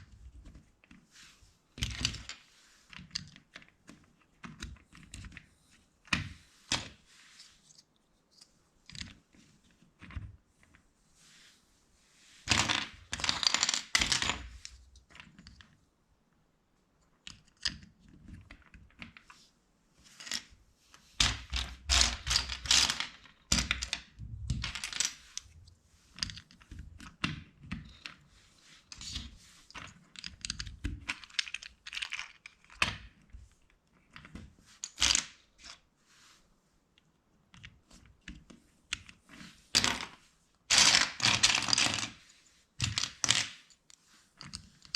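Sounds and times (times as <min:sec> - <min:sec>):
plastic bricks clicking together: 0:29.8 - 0:33.1.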